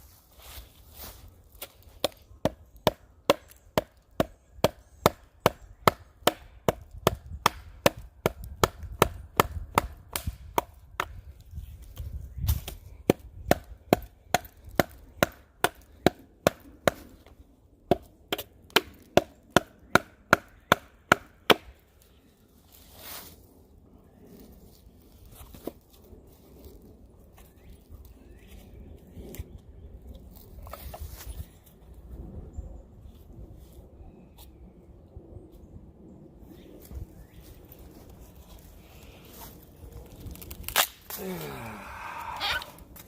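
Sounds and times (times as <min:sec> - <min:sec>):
chopping blows into wood: 0:02.0 - 0:11.2.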